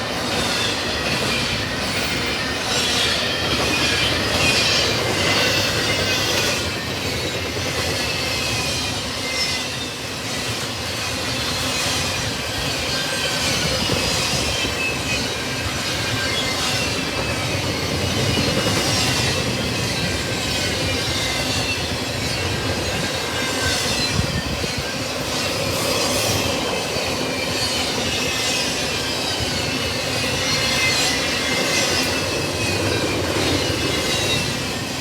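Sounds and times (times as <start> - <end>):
freight train rail noise: 0.0 - 35.0.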